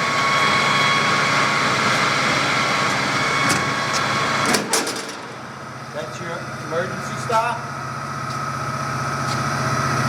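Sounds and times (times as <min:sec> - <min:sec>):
metal lathe motor and gear whine: 0:00.0 - 0:04.5.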